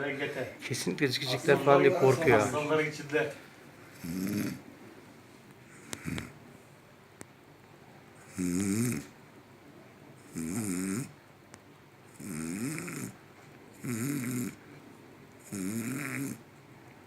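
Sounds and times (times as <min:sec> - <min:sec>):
man snoring: 0:03.9 - 0:04.6, 0:05.7 - 0:06.4, 0:08.3 - 0:09.1, 0:10.3 - 0:11.1, 0:12.1 - 0:13.2, 0:13.8 - 0:14.6, 0:15.4 - 0:16.4.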